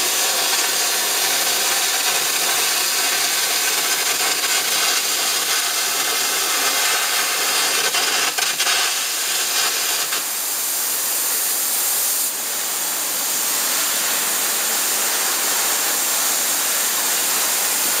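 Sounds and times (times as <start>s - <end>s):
arc crackling: 0.0s - 10.4s
compressed air jet hissing: 0.0s - 18.0s.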